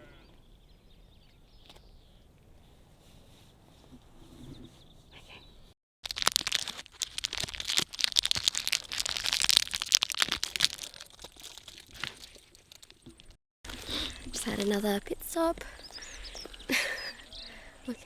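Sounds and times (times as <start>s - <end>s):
crinkly material crackling: 6.0s - 15.6s.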